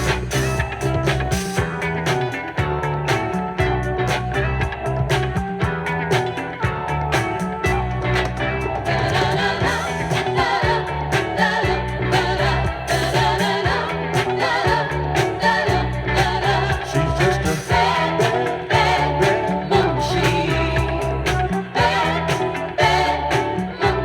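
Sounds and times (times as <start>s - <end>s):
bass line: 0.0s - 24.0s
drums with steady beat: 0.0s - 24.0s
soul-funk song: 0.0s - 24.0s
person singing: 8.9s - 24.0s.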